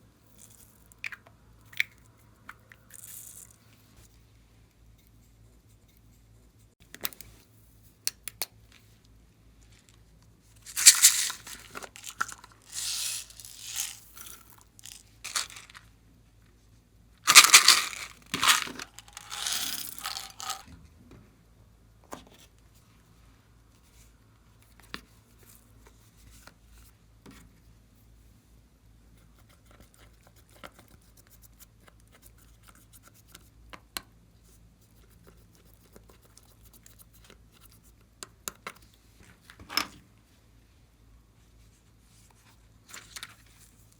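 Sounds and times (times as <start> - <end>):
slime being handled: 10.6 - 15.8.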